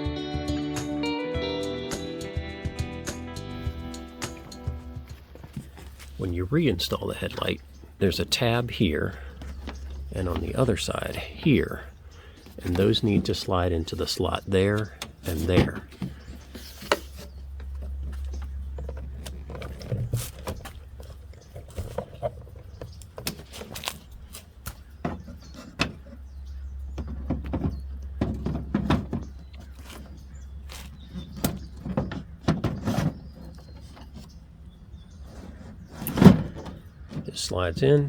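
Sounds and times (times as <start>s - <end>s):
plastic headlight clicking and scraping: 5.1s - 37.3s.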